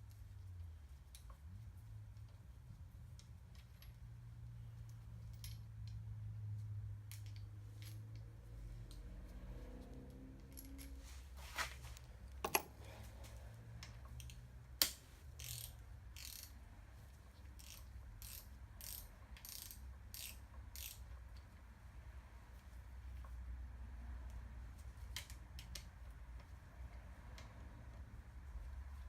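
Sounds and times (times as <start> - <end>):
metal clicks and knocks: 12.4 - 12.8
socket ratchet rasping: 14.2 - 16.6, 17.6 - 21.2.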